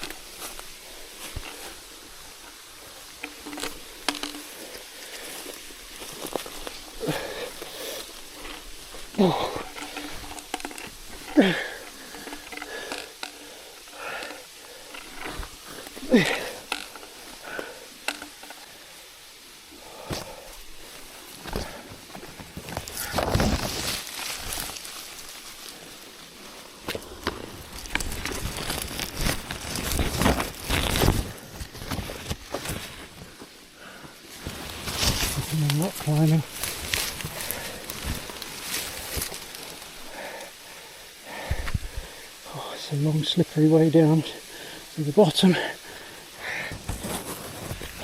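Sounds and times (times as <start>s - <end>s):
twigs snapping: 0.0s - 18.8s, 19.9s - 26.2s, 26.8s - 33.0s, 34.3s - 40.6s
undergrowth rustling and crackling: 0.0s - 48.0s
climber groaning with effort: 3.1s - 18.8s
breathing: 4.4s - 5.6s, 7.0s - 8.6s, 11.3s - 19.1s, 19.7s - 22.0s, 33.2s - 34.5s, 37.2s - 42.5s, 44.4s - 45.0s, 45.6s - 46.9s
hands and boots scraping rock: 21.4s - 25.3s, 26.8s - 33.0s, 46.7s - 48.0s.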